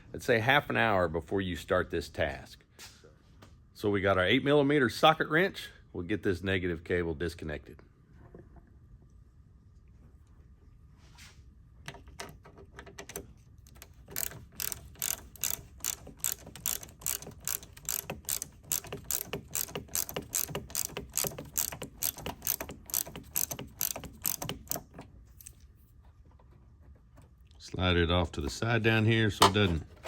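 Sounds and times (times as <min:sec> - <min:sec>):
ratchet wrench clicking: 0:13.7 - 0:25.0.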